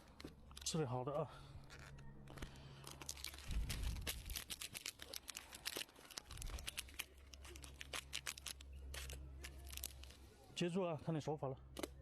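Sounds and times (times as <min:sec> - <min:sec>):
plastic packaging crinkling: 0:01.6 - 0:10.2.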